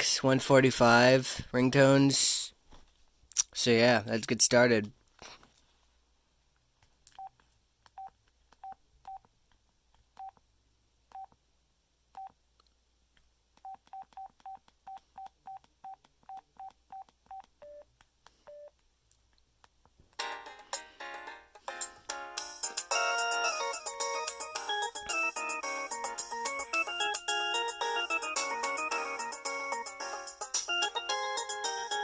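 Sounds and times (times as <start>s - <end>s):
phone ringtone: 21.7s - 32.0s.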